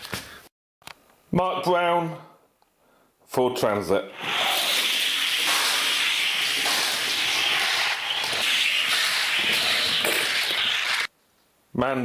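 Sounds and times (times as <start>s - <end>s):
toy wheels rolling on plastic track: 4.2s - 11.1s.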